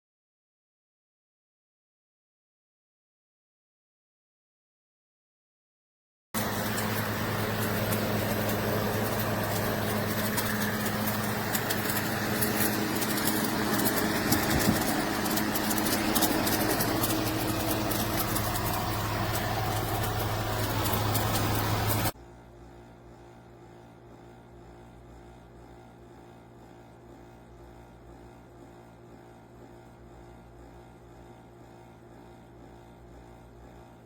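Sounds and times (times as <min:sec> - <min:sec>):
air conditioner fan rushing: 0:06.4 - 0:22.2.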